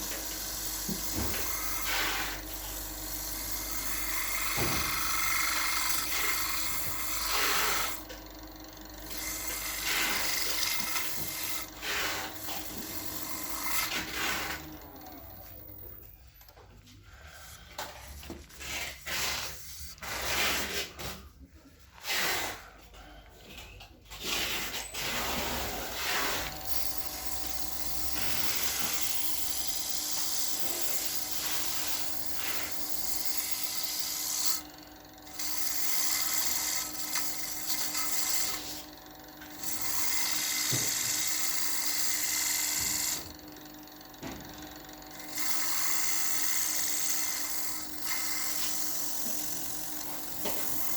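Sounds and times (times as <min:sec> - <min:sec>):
lathe humming: 0:00.0 - 0:16.5, 0:25.0 - 0:50.9
sandpaper rubbing spinning wood: 0:24.2 - 0:34.6.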